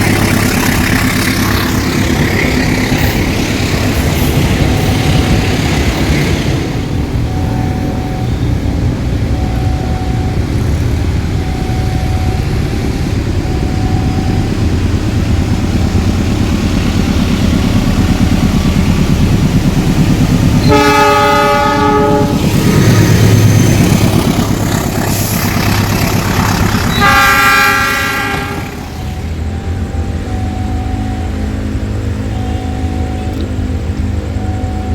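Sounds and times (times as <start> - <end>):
locomotive engine rumble: 0.0 - 34.9
locomotive air horn blasts: 20.6 - 22.9, 26.9 - 29.0.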